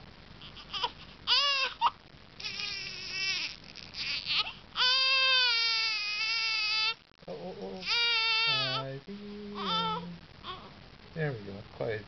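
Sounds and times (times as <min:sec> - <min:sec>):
baby crying: 0:00.5 - 0:07.0, 0:07.8 - 0:08.9, 0:09.6 - 0:10.7.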